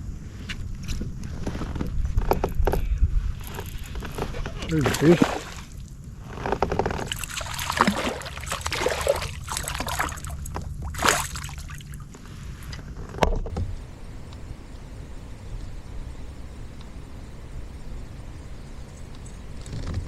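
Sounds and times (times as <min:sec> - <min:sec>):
fish splashing in water: 0:04.7 - 0:05.8, 0:07.0 - 0:12.1.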